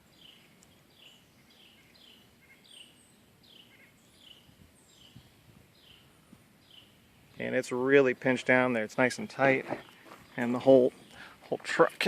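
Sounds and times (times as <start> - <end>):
bird chirping faintly: 0.0 - 7.6.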